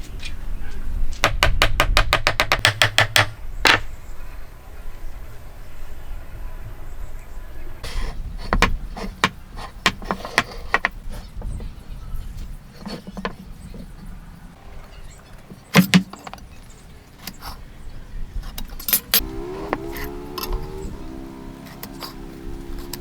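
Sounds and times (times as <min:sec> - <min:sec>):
wood and hand tools knocking: 0:01.2 - 0:03.9, 0:07.8 - 0:11.7, 0:12.8 - 0:14.0, 0:15.5 - 0:16.5.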